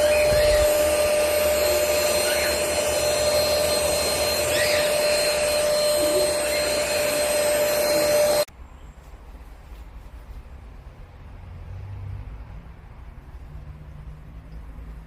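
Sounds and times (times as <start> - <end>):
stick vacuum cleaner whining: 0.0 - 8.5.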